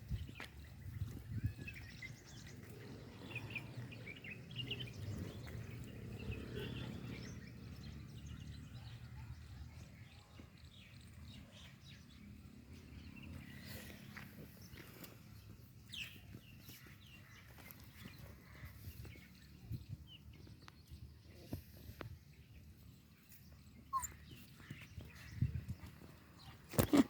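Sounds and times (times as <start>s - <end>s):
bird chirps: 23.8s - 25.4s.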